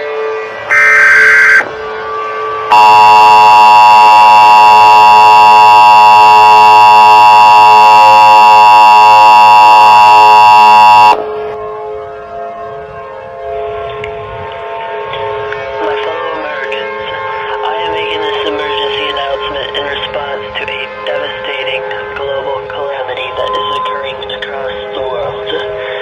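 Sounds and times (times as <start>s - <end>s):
two-tone alert signal: 0.7s - 1.7s, 2.7s - 11.2s.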